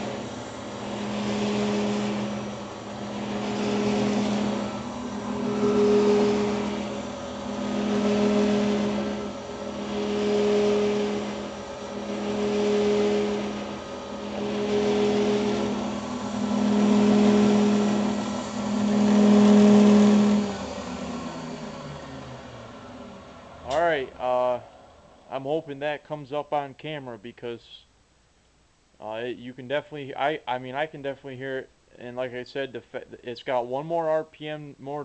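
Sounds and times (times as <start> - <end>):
milling machine spindle humming: 0.0 - 25.2.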